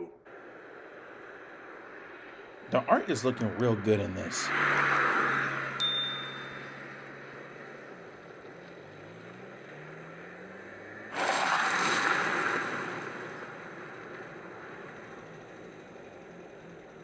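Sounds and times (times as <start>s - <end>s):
low hum with rising tones: 0.0s - 11.1s.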